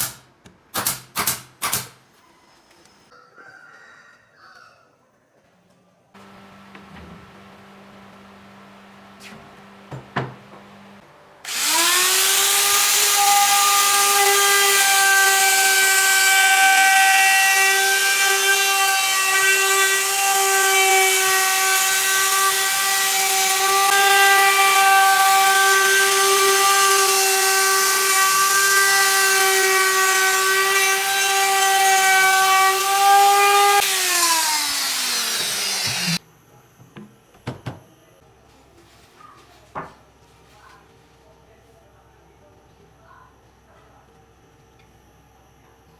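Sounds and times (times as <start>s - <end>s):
power tool motor whining: 11.5s - 14.8s, 17.6s - 36.2s.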